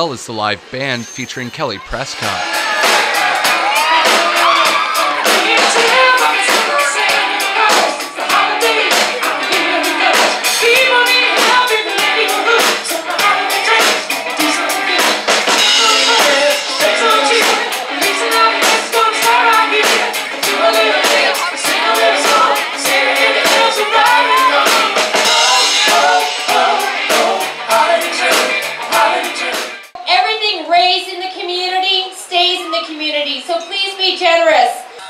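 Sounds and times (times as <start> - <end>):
drum kit beat: 2.1 - 30.0
person singing: 3.5 - 29.6.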